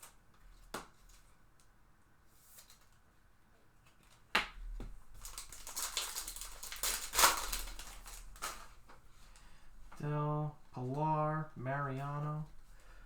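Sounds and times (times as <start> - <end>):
foil wrapper crinkling: 5.1 - 9.5
sharp crackle: 5.2 - 8.7.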